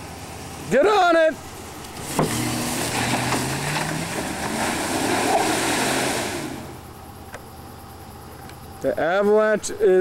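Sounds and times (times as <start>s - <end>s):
pickup truck engine revving: 1.4s - 7.0s
spinning tyres spraying mud: 1.7s - 6.9s.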